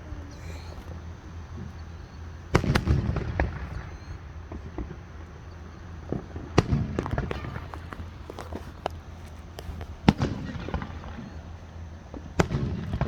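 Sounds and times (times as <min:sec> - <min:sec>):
loud firework bang: 0:02.5 - 0:05.0, 0:06.1 - 0:08.2, 0:12.4 - 0:13.0
firework crackling pops: 0:02.5 - 0:13.0.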